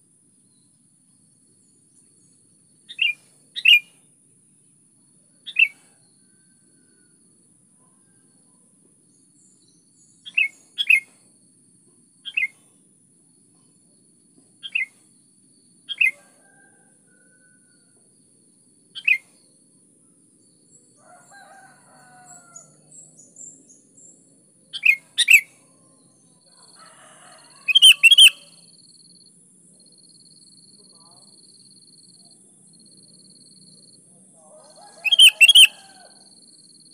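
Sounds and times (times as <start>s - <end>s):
bulbul short sharp calls: 27.7s - 28.6s, 35.0s - 36.0s.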